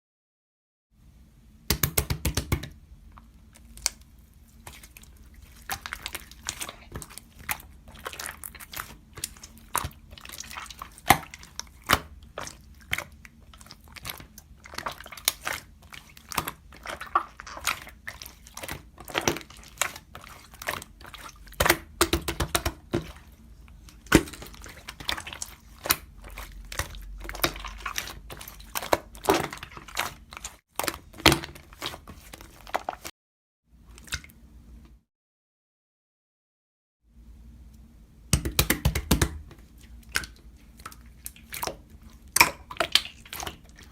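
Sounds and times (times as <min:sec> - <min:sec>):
slime clicking and popping: 0:38.3 - 0:39.4.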